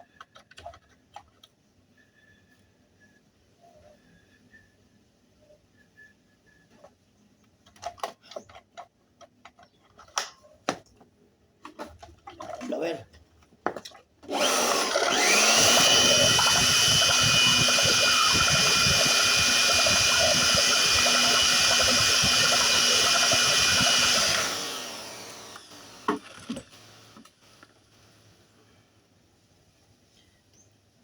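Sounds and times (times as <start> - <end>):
electric air blower whining: 14.3 - 27.6.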